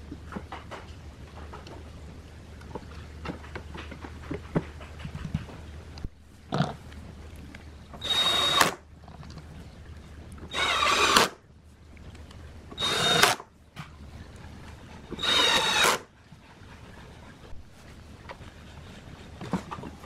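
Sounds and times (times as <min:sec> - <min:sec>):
power drill whining: 0:08.0 - 0:08.8, 0:10.5 - 0:11.4, 0:12.8 - 0:13.4, 0:15.2 - 0:16.1.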